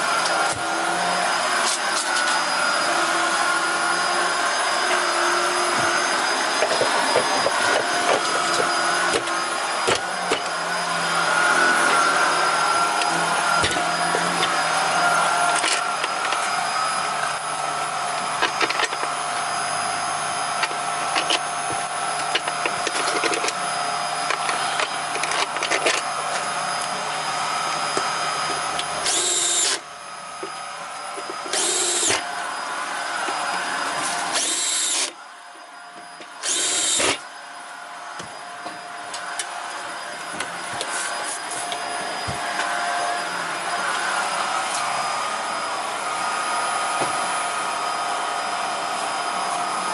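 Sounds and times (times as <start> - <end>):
steady whirring motor: 0.0 - 49.9
power screwdriver bursts: 28.7 - 29.8, 31.4 - 32.2, 34.1 - 35.2, 36.3 - 37.2.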